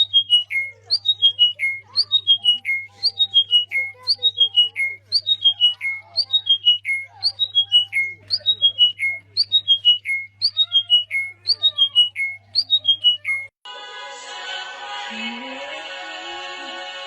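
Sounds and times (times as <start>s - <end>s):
faint bird chirps: 0.0s - 13.5s
songbird repeating phrase: 0.0s - 13.5s.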